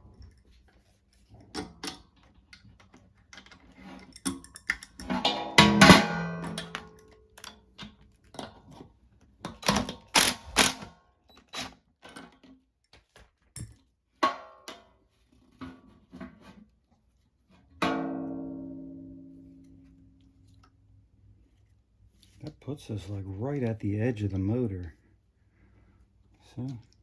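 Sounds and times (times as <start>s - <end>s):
acoustic guitar playing: 17.9s - 20.1s.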